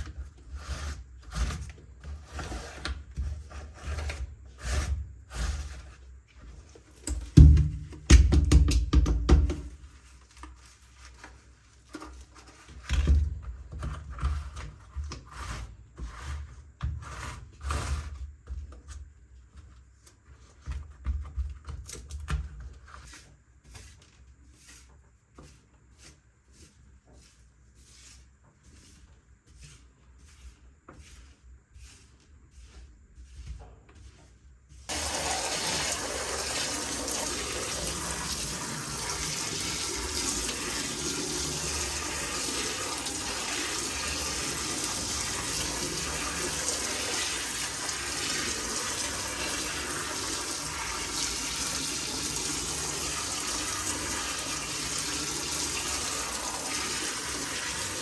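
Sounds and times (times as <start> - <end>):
tap water running: 7.0 - 9.8, 34.9 - 58.0.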